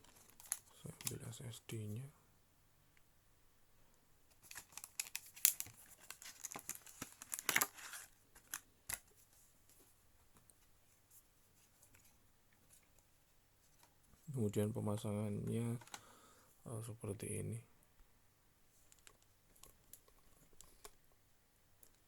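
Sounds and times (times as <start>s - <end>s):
plastic packaging crackling: 0.0s - 1.2s, 4.4s - 9.0s.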